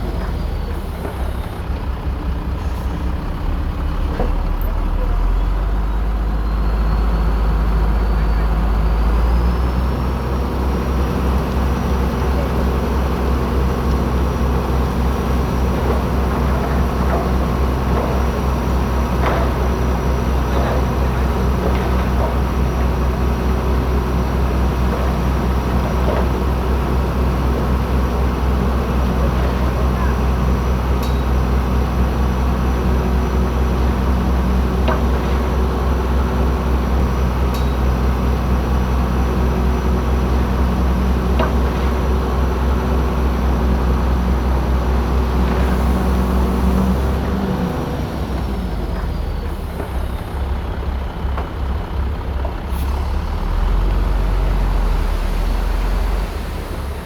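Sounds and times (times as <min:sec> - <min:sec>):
heavy diesel engine humming: 0:00.0 - 0:57.0.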